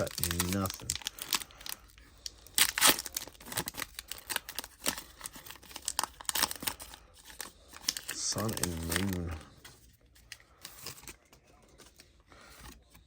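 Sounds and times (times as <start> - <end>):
foil wrapper crinkling and tearing: 0.0 - 9.6.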